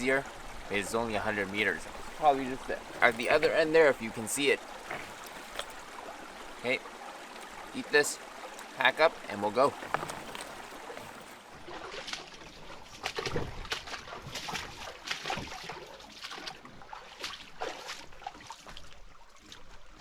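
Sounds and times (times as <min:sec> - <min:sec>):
water trickling and splashing: 0:00.0 - 0:20.0
knocks and scrapes: 0:01.6 - 0:05.9, 0:09.4 - 0:11.5.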